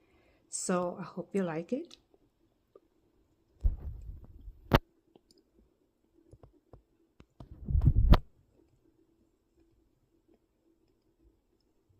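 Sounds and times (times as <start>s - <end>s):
low rumbling thumps: 3.6s - 4.6s.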